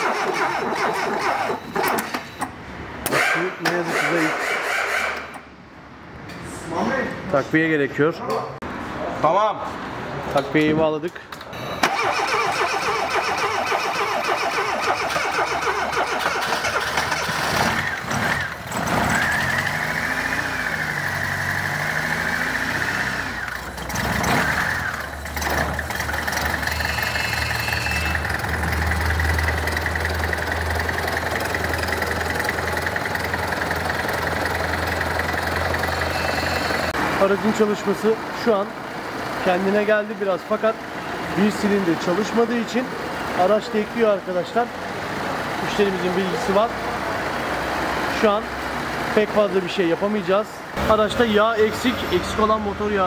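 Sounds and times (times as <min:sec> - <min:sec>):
starter motor cranking: 0:00.0 - 0:02.1, 0:11.8 - 0:19.8
car engine misfiring: 0:00.0 - 0:04.5, 0:11.6 - 0:38.1.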